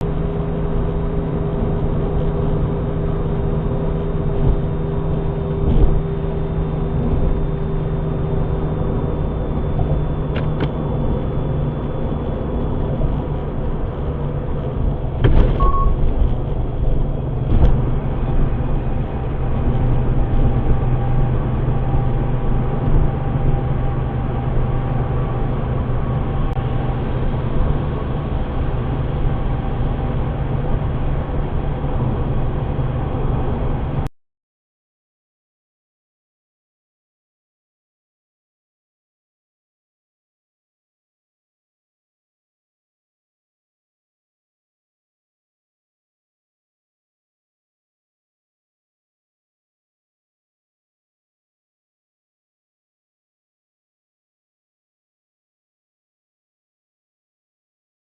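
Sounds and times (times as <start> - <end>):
car engine and road noise: 0.0 - 34.1.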